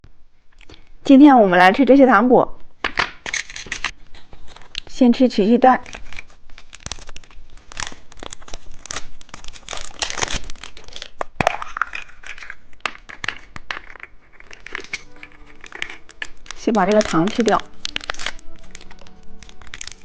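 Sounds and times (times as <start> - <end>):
candy wrapper crinkling: 5.8 - 20.0.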